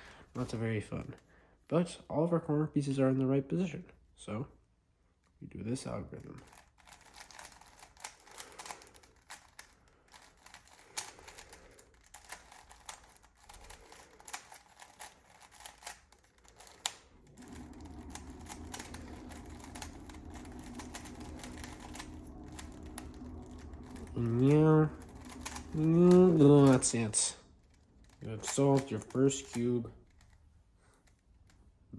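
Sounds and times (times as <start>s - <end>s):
puzzle cube plastic clicks: 6.2s - 31.7s
steady low hum: 6.4s - 31.4s.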